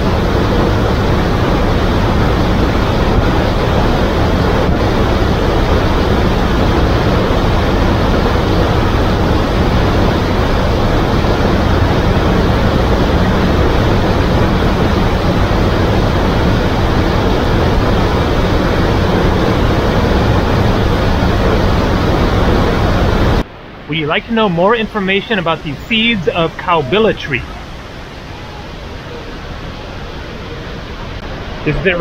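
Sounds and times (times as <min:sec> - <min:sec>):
waterfall rushing water: 0:00.0 - 0:32.0.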